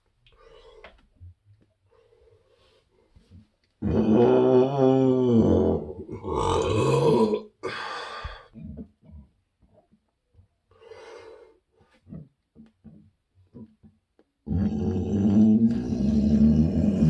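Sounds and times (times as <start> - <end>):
man burping: 5.0 - 7.9
throat sounds: 5.3 - 9.9, 11.9 - 17.0.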